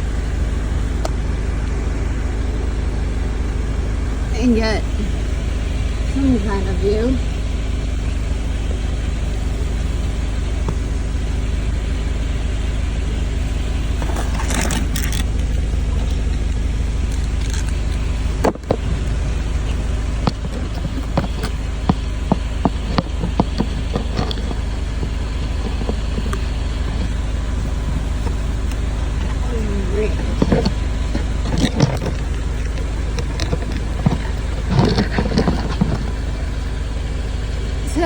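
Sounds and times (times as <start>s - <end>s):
sharp clicks and small knocks: 14.0s - 36.8s.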